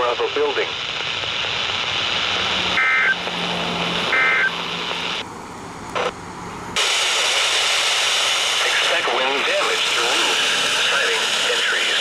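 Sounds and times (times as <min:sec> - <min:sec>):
radio static: 0:00.0 - 0:05.2, 0:05.9 - 0:06.2, 0:06.8 - 0:12.0
buzzy digital data tones: 0:04.0 - 0:05.2.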